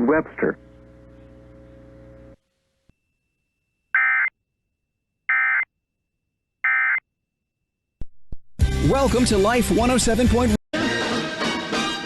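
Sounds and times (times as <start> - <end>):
faint steady hum: 0.0 - 3.9.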